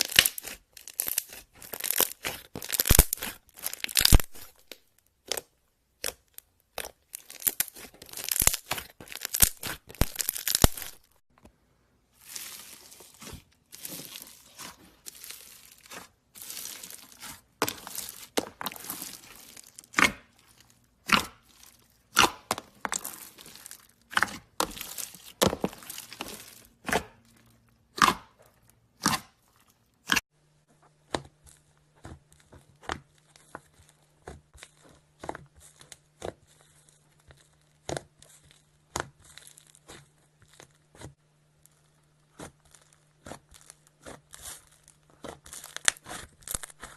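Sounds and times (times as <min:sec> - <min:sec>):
slime squeezed by hand: 0:00.0 - 0:04.6.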